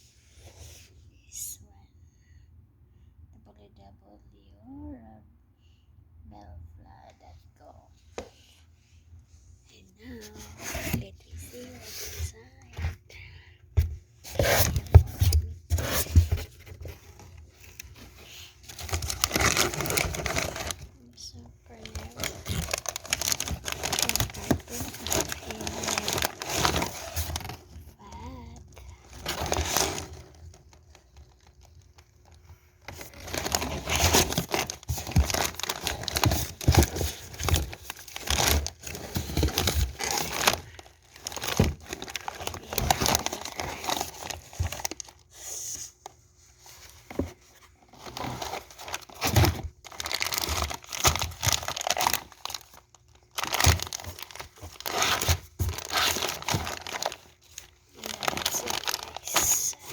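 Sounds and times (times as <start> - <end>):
packaging crinkling and tearing: 14.3 - 59.9.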